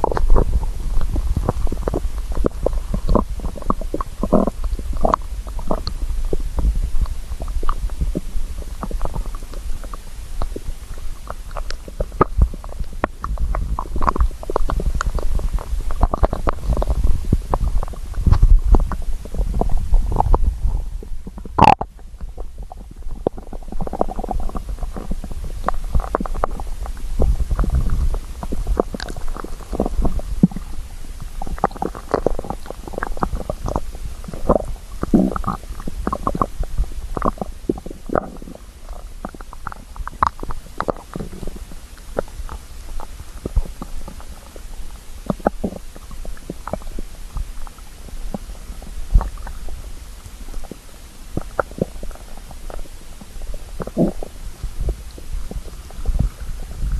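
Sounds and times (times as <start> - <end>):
stomach growling: 0.0 - 56.9.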